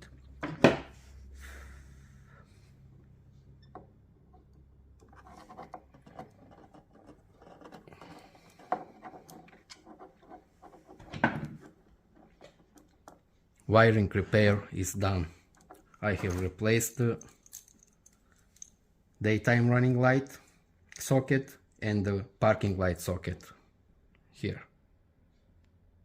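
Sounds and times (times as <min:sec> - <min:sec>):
scratching and rubbing of small parts: 0:03.2 - 0:13.7, 0:15.3 - 0:18.8.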